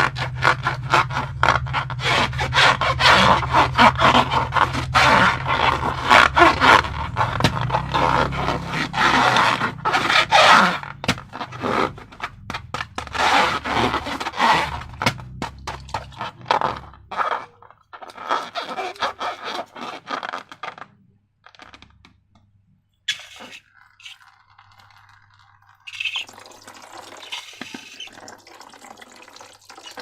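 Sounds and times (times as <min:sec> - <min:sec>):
slime crackling and scraping: 0:00.0 - 0:22.0.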